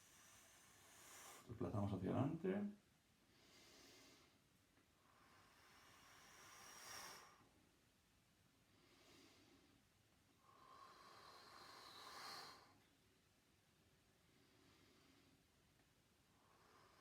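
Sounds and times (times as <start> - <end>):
person breathing slowly: 3.3 - 4.4, 5.0 - 7.5, 8.7 - 9.8, 10.4 - 12.8, 14.2 - 15.5.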